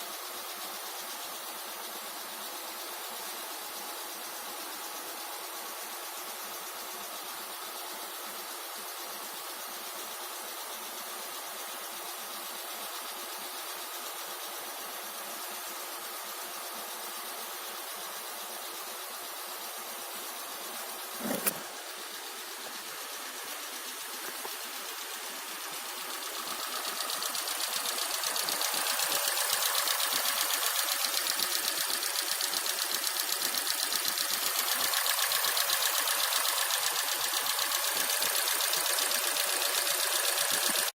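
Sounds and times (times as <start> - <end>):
sharp click: 21.2 - 21.7
petrol engine running: 21.2 - 40.9.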